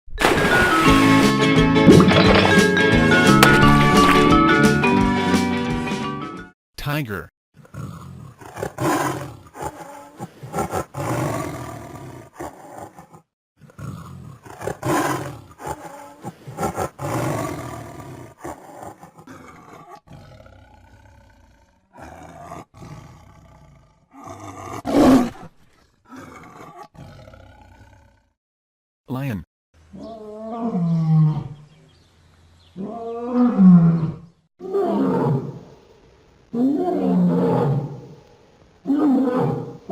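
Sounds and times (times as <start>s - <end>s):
tiger roaring: 7.6s - 28.4s, 29.9s - 31.6s, 32.8s - 35.7s, 36.5s - 38.2s, 38.8s - 39.9s.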